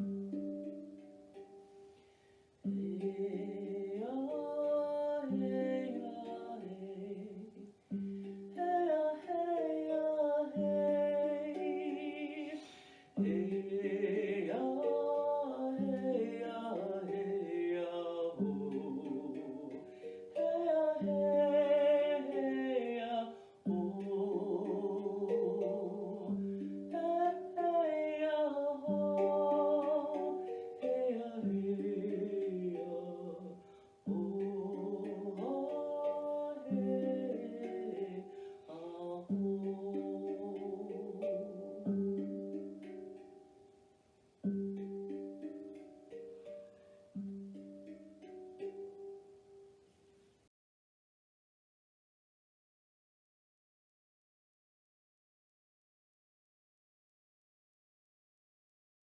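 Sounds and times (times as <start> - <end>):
wordless singing: 2.6 - 43.3.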